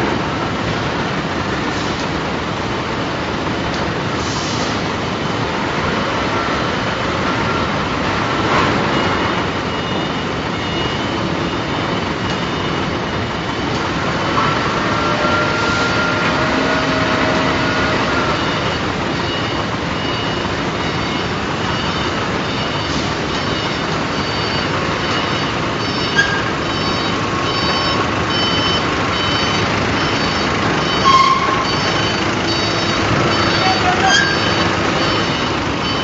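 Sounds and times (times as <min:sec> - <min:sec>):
industrial furnace noise: 0:00.0 - 0:36.0
faint metallic squeals: 0:14.4 - 0:18.4, 0:32.6 - 0:34.7.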